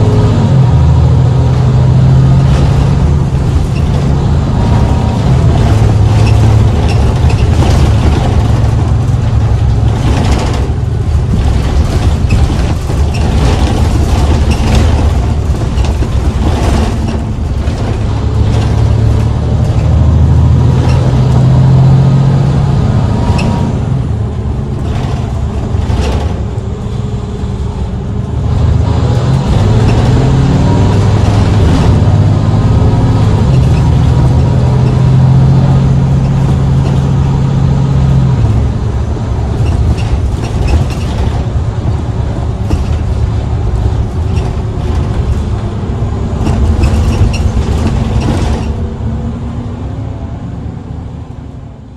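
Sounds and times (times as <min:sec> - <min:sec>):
bus diesel engine accelerating: 0:00.0 - 0:51.9
clicks and rattles: 0:02.5 - 0:20.0, 0:46.4 - 0:48.8.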